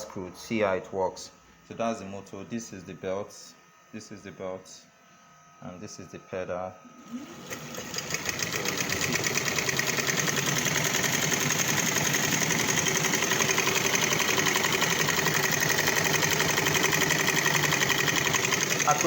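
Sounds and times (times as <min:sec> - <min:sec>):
sewing machine running: 0:07.0 - 0:19.0.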